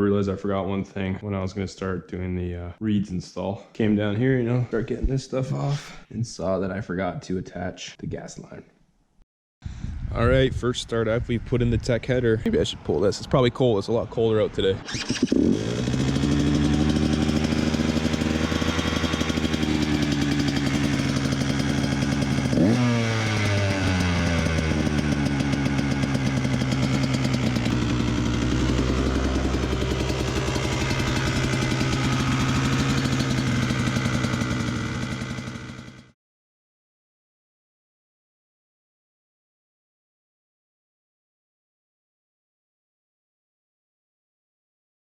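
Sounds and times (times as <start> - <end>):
engine throttle blip: 14.8 - 35.9
two-stroke engine idling: 14.9 - 36.2.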